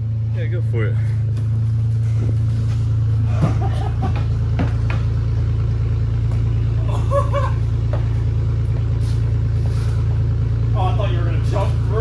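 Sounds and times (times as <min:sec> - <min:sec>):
vehicle engine idling: 0:00.0 - 0:12.0
short thumps: 0:01.3 - 0:05.6.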